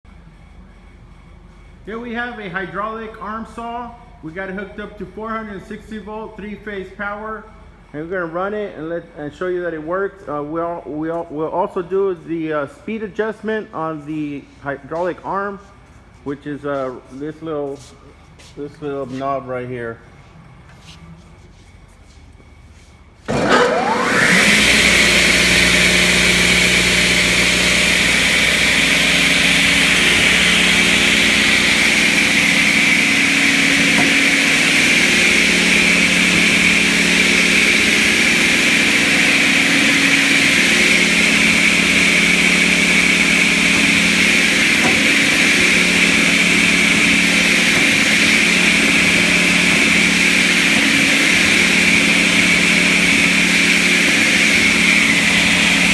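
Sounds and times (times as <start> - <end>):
electric saw motor whine: 23.3 - 55.9.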